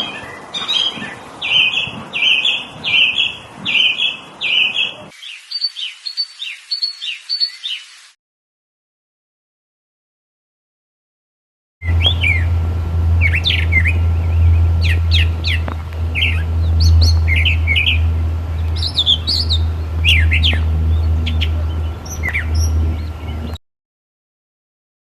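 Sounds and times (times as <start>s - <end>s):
songbirds chirping: 0.0s - 8.1s, 11.8s - 23.6s
steady low hum: 11.8s - 23.6s.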